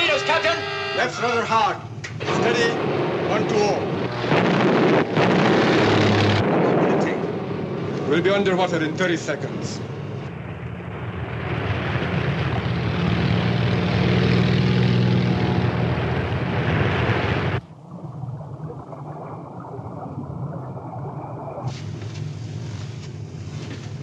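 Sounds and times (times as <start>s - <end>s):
propeller aircraft engine: 1.9s - 8.1s, 9.9s - 17.7s
low steady hum: 15.2s - 24.0s.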